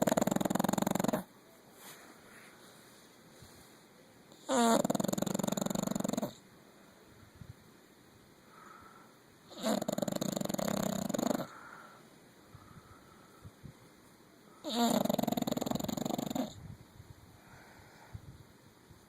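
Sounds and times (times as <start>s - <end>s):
dog snoring: 0.0s - 1.3s, 4.3s - 6.4s, 9.5s - 11.6s, 14.6s - 16.6s
quiet breathing: 1.6s - 4.5s, 8.3s - 9.5s, 10.9s - 15.3s, 16.4s - 18.6s.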